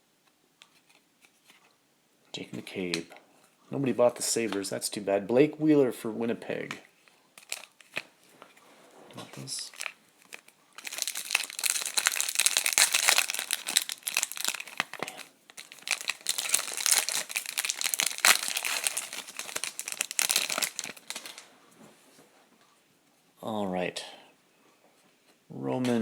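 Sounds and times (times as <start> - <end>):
wrapper crinkling: 7.0 - 8.6, 9.4 - 21.5.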